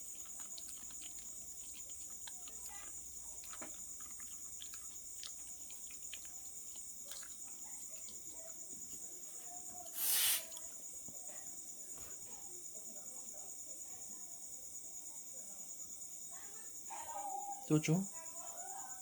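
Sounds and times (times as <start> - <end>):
dogs chewing dry kibble: 0.0 - 10.0
short loud hissing burst: 9.9 - 10.5.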